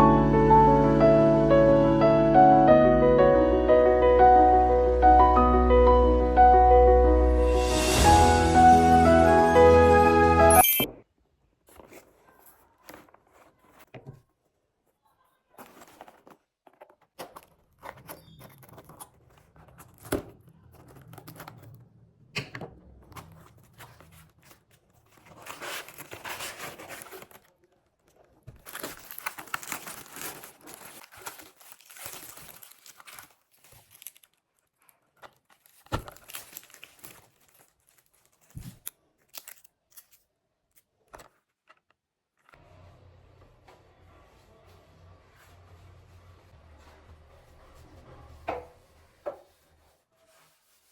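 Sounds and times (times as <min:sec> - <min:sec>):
crinkling and tearing: 0:15.5 - 0:22.0, 0:22.9 - 0:41.9.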